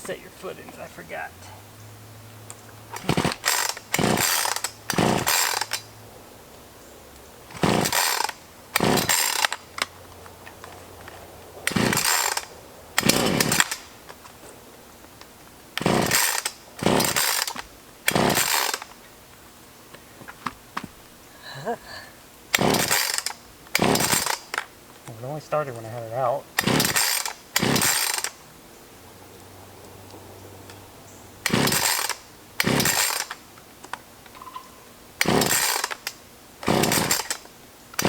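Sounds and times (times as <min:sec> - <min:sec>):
chainsaw starter cord rasping: 0:02.6 - 0:05.9, 0:07.4 - 0:14.4, 0:15.1 - 0:19.0, 0:22.5 - 0:28.4, 0:31.4 - 0:34.0, 0:35.1 - 0:38.0.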